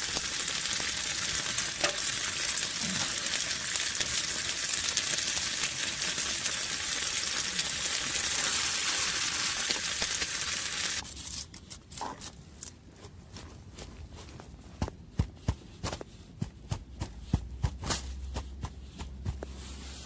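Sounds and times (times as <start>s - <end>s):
food sizzling in a pan: 0.0s - 11.0s.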